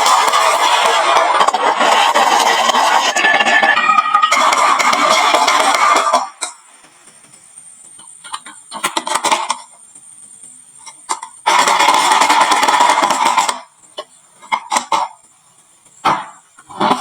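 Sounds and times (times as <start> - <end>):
marbles rattling and colliding: 0.0 - 6.4.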